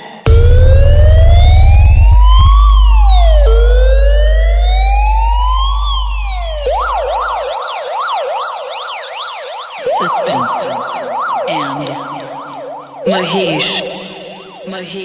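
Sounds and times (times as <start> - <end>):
deep bass drone: 0.3 - 7.4
electronic siren wail and yelp: 0.3 - 15.0.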